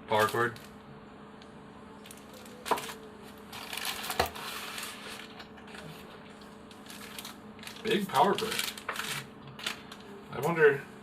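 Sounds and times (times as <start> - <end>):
packaging rustling and crinkling: 2.0 - 9.8.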